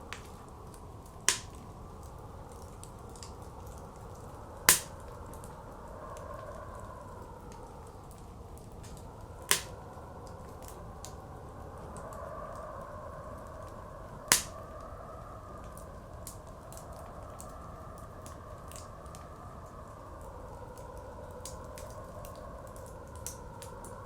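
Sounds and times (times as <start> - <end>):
blizzard wind: 0.0 - 24.0
wood fire crackling: 0.0 - 24.0
loud fire pops: 1.3 - 1.6, 4.7 - 5.2, 9.5 - 9.8, 14.3 - 14.7.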